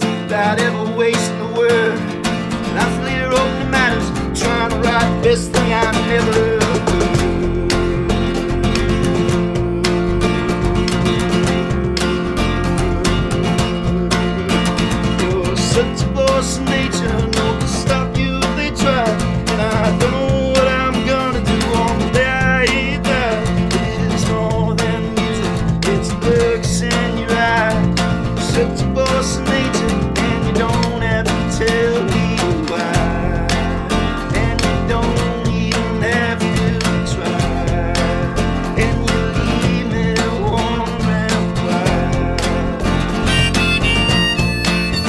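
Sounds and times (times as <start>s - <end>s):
strummed acoustic guitar: 0.0s - 45.0s
wavering melody line: 43.2s - 45.0s.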